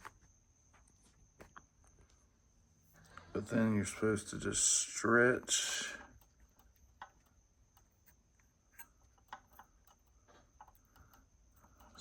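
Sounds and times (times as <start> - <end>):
faint clicks of small parts: 5.6 - 12.0.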